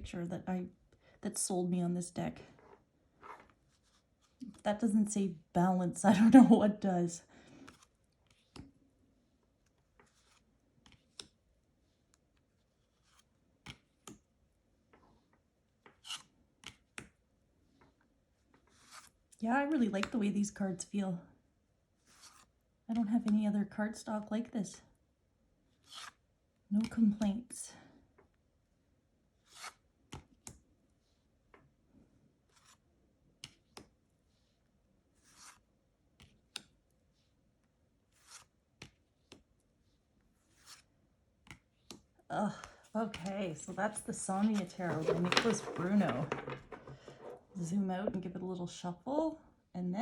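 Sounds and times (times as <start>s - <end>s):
cards sliding and snapping: 7.7s - 8.7s, 10.0s - 11.4s, 12.8s - 14.2s, 15.8s - 17.2s, 18.6s - 19.2s, 22.0s - 22.5s, 25.8s - 26.2s, 29.4s - 30.6s, 32.5s - 34.0s, 35.2s - 36.8s, 38.1s - 39.5s, 40.4s - 42.1s, 43.9s - 47.5s.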